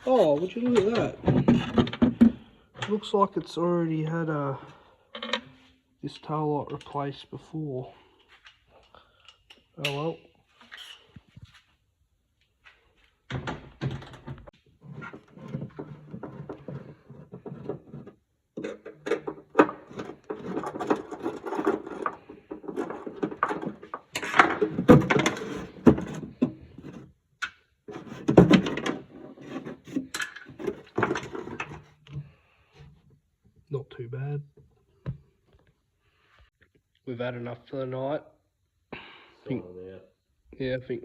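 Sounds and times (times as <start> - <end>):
car parts and tools rattling: 13.4 - 27.2, 27.9 - 32.4.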